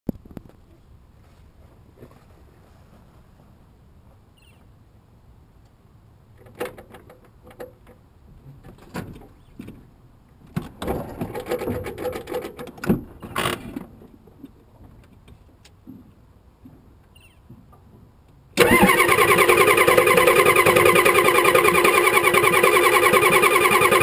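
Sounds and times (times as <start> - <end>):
mechanical clicks and rattles: 18.6 - 24.0.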